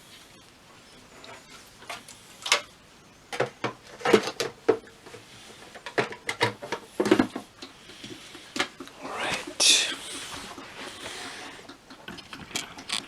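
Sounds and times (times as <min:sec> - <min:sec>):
plastic knocks and clicks: 0:03.3 - 0:08.8.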